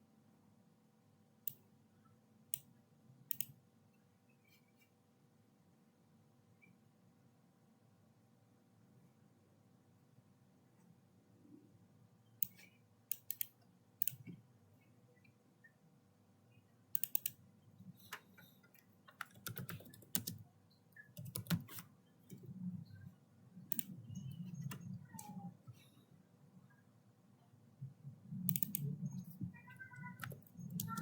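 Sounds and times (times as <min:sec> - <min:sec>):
mouse and keyboard clicks: 0:03.3 - 0:03.6, 0:12.4 - 0:14.4, 0:16.9 - 0:17.4, 0:18.0 - 0:20.4, 0:21.0 - 0:22.5, 0:23.7 - 0:25.8, 0:28.4 - 0:31.0.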